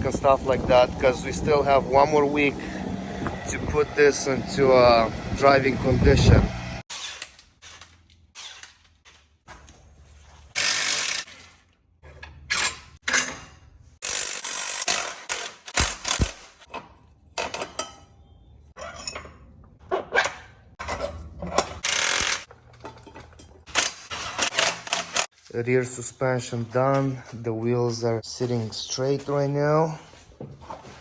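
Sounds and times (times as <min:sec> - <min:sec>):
hand tools ratcheting and clanking: 0:06.9 - 0:09.4, 0:10.5 - 0:18.2, 0:18.8 - 0:25.3.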